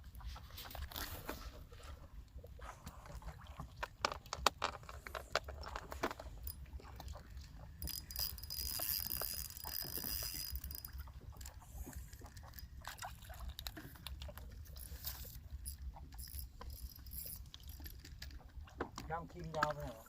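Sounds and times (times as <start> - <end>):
water sloshing: 0.0 - 20.0
small clicks and knocks: 3.7 - 7.2, 7.8 - 19.9.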